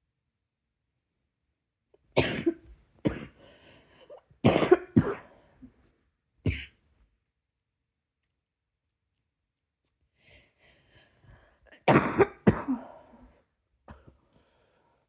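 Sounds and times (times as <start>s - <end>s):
person coughing: 2.2s - 3.4s, 4.4s - 5.4s, 6.4s - 6.8s, 11.8s - 13.2s
faint breathing: 3.4s - 4.2s, 10.2s - 11.7s, 14.0s - 15.0s.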